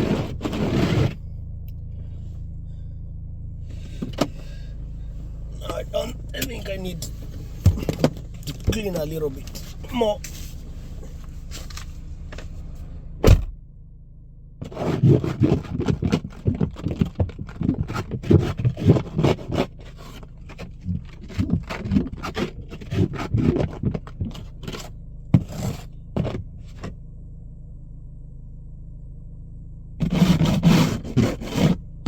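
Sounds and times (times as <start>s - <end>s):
snow brush scraping car: 0.0s - 1.3s, 3.7s - 13.0s, 14.6s - 26.9s, 30.0s - 31.8s
low engine hum: 0.0s - 32.0s
loud thud: 13.2s - 13.6s.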